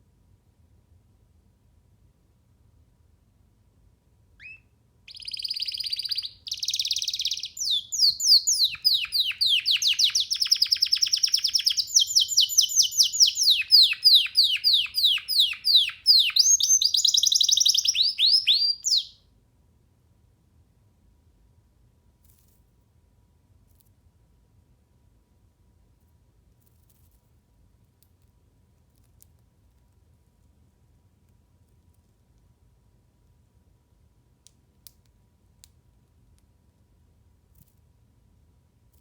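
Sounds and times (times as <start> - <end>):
canary singing: 4.4 - 19.2.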